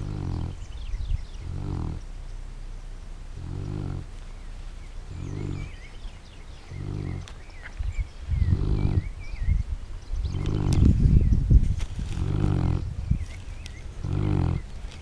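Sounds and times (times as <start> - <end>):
dog snoring: 0.0 - 0.6, 1.4 - 2.0, 3.4 - 4.1, 5.1 - 5.8, 6.7 - 7.3, 8.4 - 9.1, 10.3 - 10.9, 12.2 - 12.9, 14.0 - 14.7
small birds chirping: 0.0 - 15.0.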